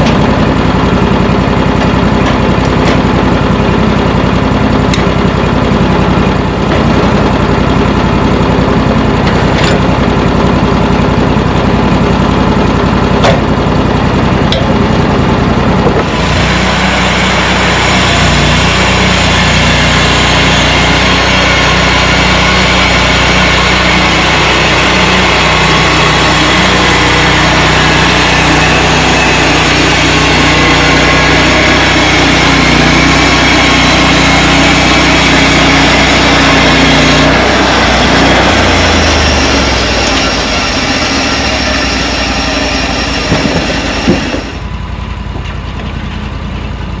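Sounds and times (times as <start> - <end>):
sawmill engine running: 0.0 - 47.0
band blade cutting log: 16.0 - 44.6.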